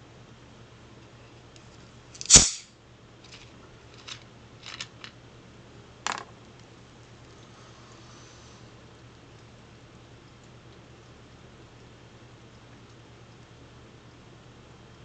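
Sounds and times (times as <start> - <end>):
can popping open with fizz: 2.2 - 2.7.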